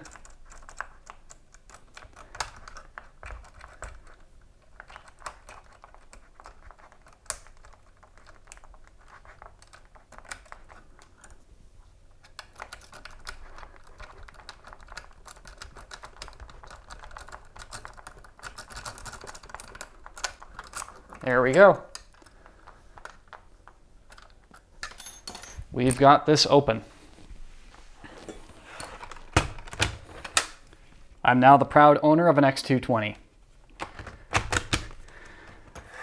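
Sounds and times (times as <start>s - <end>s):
small metallic clicks and scratches: 0.0s - 11.5s, 12.2s - 25.6s.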